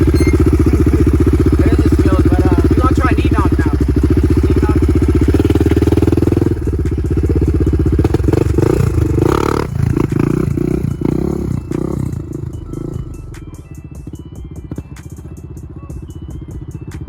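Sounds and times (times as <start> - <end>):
quad engine throbbing: 0.0 - 17.0.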